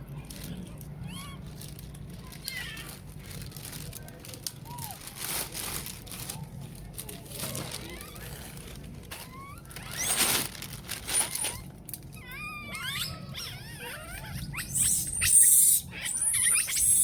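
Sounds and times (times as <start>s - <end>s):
monkeys squealing and chirping: 12.2s - 17.0s
monkey harsh noisy bursts: 14.6s - 17.0s.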